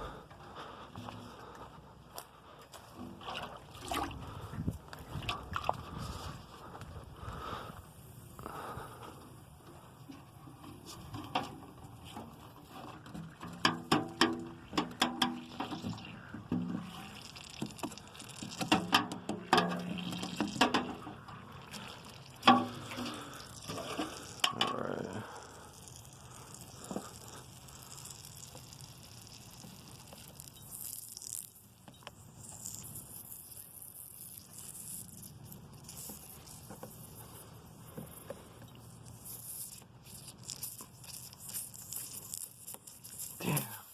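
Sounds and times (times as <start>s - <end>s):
hand tools clicking and scraping: 10.5s - 25.3s.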